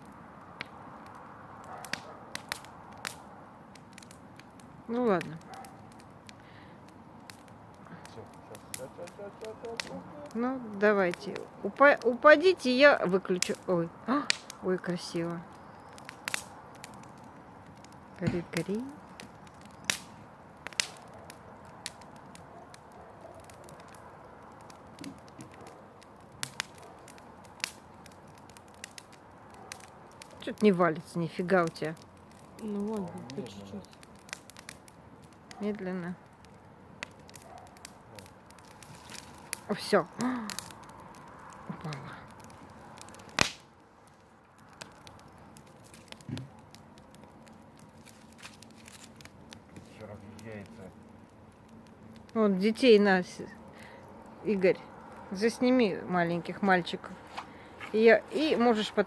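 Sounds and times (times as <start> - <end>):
bonfire crackling: 0.0 - 59.0
fire pops: 0.0 - 59.0.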